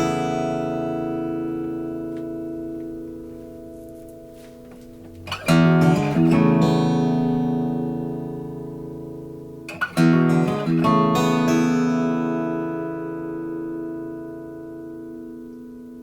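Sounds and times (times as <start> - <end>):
acoustic guitar finger-picked: 0.0 - 16.0.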